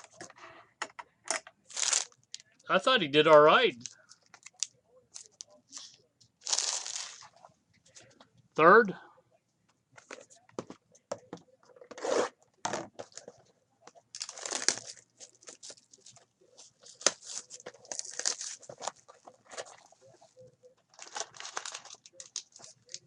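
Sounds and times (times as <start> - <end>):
foil wrapper crinkling and tearing: 1.7 - 2.2, 4.4 - 7.2, 14.2 - 16.1, 16.8 - 20.0, 20.9 - 23.0.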